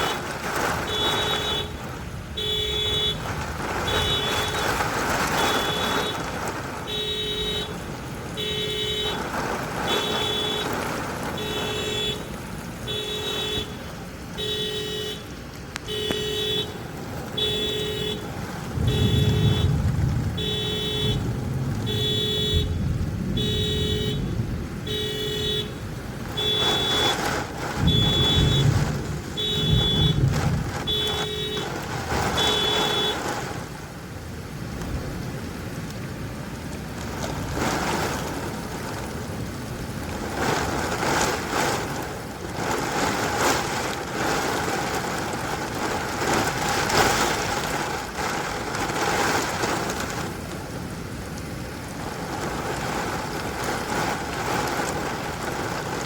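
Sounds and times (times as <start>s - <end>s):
car alarm horn pulsing: 0.0s - 6.3s, 6.9s - 7.8s, 8.4s - 9.3s, 9.9s - 13.8s, 14.4s - 16.8s, 17.4s - 19.8s, 20.4s - 21.3s, 21.9s - 22.8s, 23.4s - 24.3s, 24.9s - 25.8s, 26.4s - 33.4s
thunder rumbling: 0.0s - 13.0s, 18.2s - 34.0s, 36.8s - 51.0s
rain hiss: 0.0s - 56.0s.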